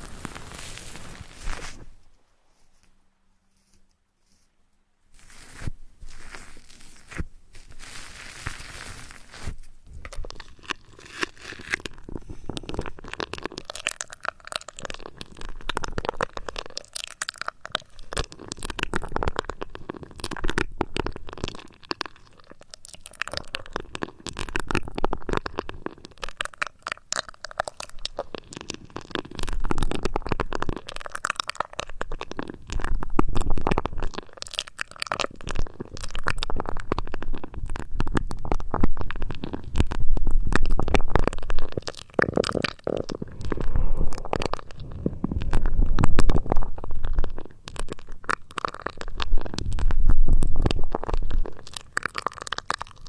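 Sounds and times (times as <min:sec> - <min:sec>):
crackling and rubbing at microphone: 0:00.0 - 0:53.0
low rumble: 0:43.2 - 0:47.4.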